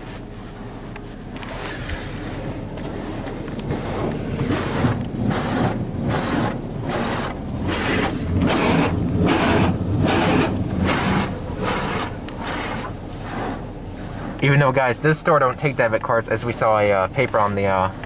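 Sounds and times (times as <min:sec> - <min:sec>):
high-pressure water spray hissing: 0:03.8 - 0:14.3.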